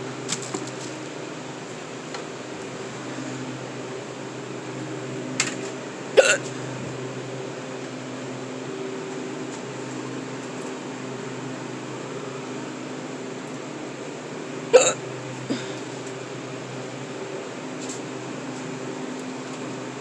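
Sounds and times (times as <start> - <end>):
cooler fans humming: 0.0 - 20.0
sharp hiccup of fans: 5.4 - 6.7, 14.7 - 16.2.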